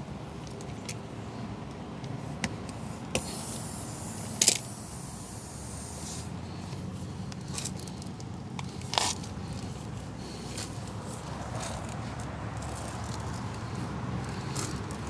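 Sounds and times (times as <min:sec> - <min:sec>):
hiss: 0:02.7 - 0:06.7.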